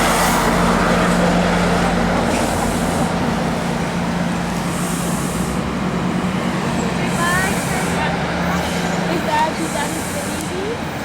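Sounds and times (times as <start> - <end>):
diesel engine drone: 0.0 - 11.0.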